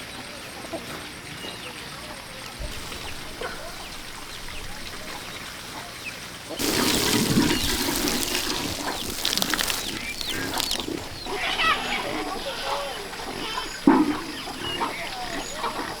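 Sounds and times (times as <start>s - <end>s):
water rushing and splashing: 6.6s - 16.0s.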